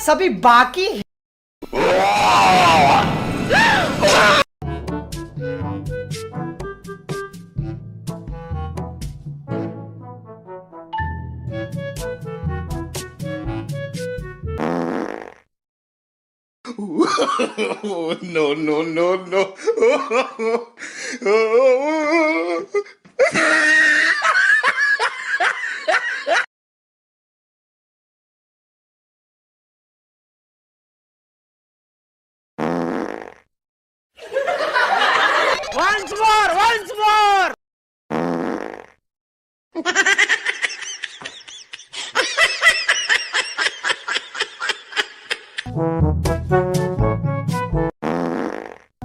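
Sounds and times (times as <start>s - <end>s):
hearty laughter: 16.8s - 21.4s, 22.7s - 26.5s, 34.2s - 36.1s, 39.8s - 45.7s
music with deep bass line: 45.7s - 47.9s.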